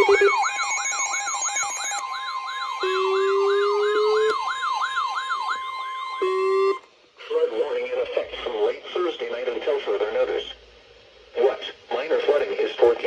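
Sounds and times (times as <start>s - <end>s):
electronic beeps: 0.0s - 6.8s
falling siren-like tone: 0.0s - 6.9s
long steady tone: 0.0s - 9.2s.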